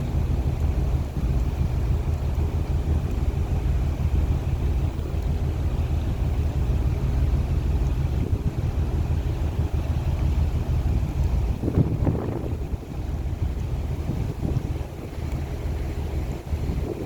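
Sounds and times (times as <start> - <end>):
faint machinery whine: 0.0 - 17.0
ferry engine rumble: 0.0 - 17.0
wind buffeting microphone: 0.0 - 17.0.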